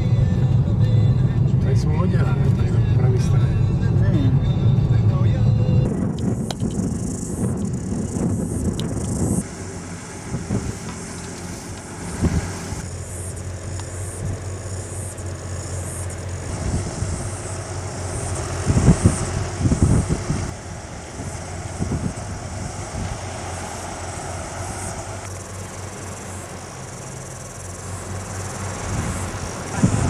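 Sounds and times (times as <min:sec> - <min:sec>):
heavy low thumps: 0:00.0 - 0:12.9
engine and road hum: 0:00.0 - 0:30.0.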